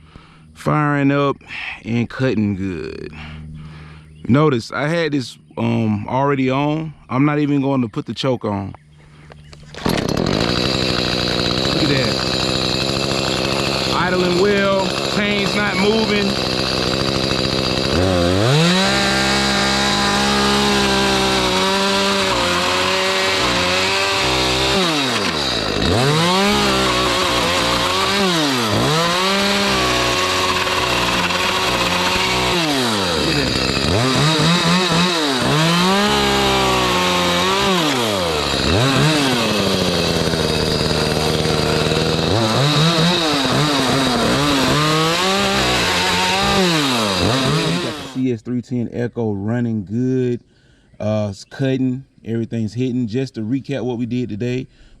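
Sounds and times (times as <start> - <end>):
chainsaw cutting wood: 9.5 - 48.3.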